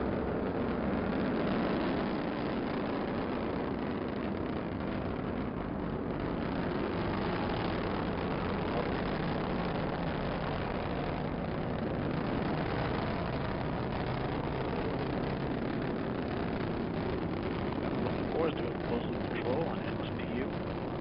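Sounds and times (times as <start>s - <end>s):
rocket engine roar: 0.0s - 21.0s.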